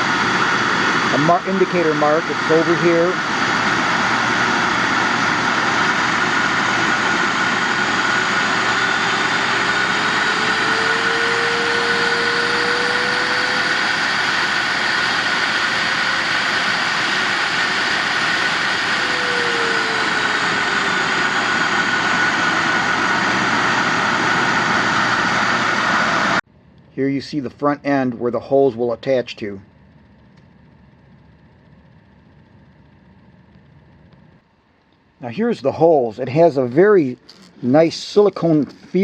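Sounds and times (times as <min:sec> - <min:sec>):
pet dryer blowing air: 0:00.0 - 0:26.4.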